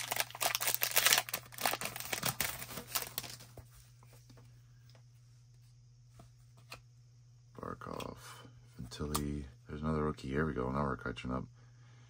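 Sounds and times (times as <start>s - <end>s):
card pack wrapper crinkling and tearing: 0.0s - 3.6s.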